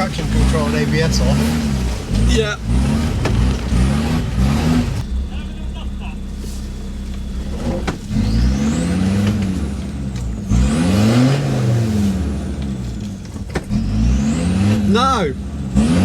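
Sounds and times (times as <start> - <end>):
car engine revving: 0.0 - 16.0
faint high whine: 5.0 - 10.5.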